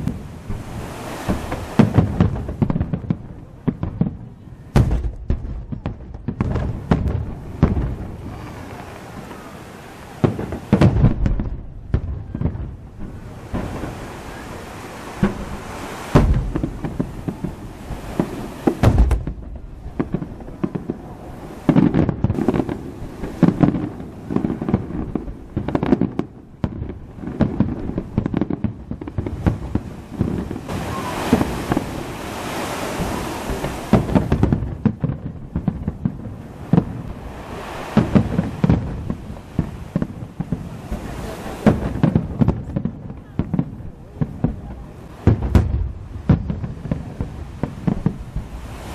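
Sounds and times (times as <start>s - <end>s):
fireworks booms and bangs: 0.0s - 48.9s
fireworks hissing crackle: 0.0s - 48.9s.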